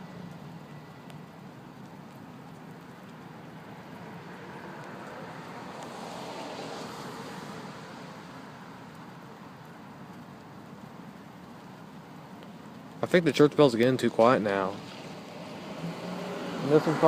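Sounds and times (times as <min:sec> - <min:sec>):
car passing by: 0:03.9 - 0:08.9, 0:14.5 - 0:17.0.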